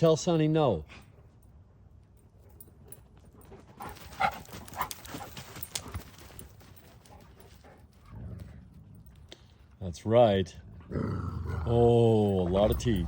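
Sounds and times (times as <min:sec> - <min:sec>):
paws scrabbling on ground: 0:02.4 - 0:09.7
wolves snarling: 0:07.6 - 0:09.2, 0:10.6 - 0:13.0.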